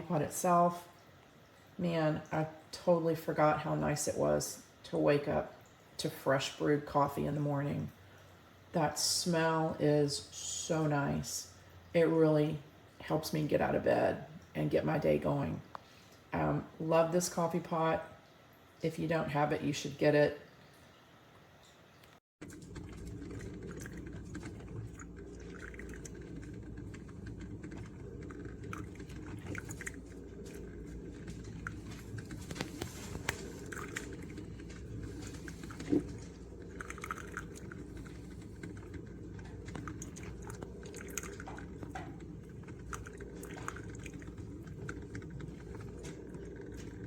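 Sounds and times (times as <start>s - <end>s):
coffee maker humming: 0.0s - 18.1s, 22.4s - 47.0s
hot water hissing and gurgling: 22.9s - 47.0s.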